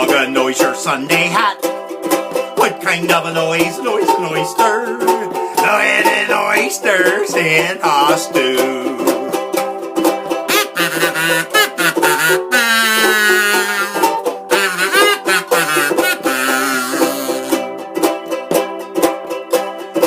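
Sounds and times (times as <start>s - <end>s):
ukulele strumming: 0.0s - 20.0s
kazoo buzzing a melody: 10.5s - 17.6s.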